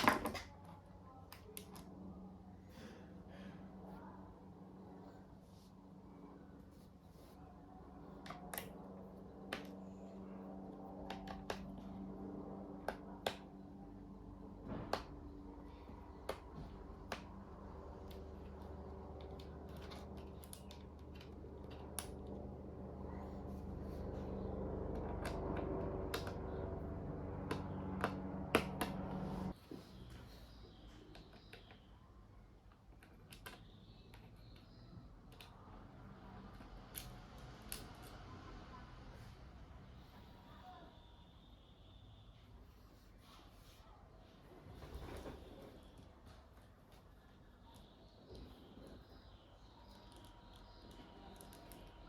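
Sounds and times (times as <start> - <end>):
faint steady hum: 0.0 - 52.0
plastic parts clicking and snapping: 32.7 - 35.6.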